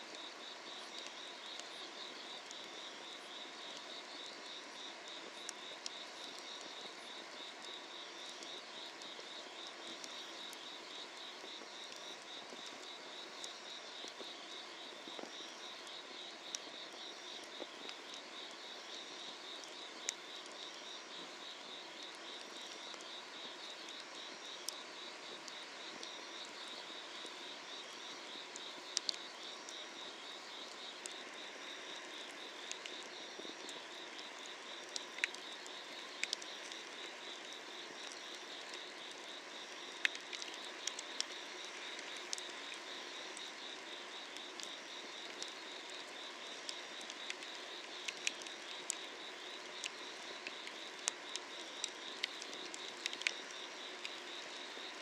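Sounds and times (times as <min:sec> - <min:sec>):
night insects trilling: 0:00.0 - 0:55.0
wood fire crackling and popping: 0:15.2 - 0:26.8, 0:32.0 - 0:54.2.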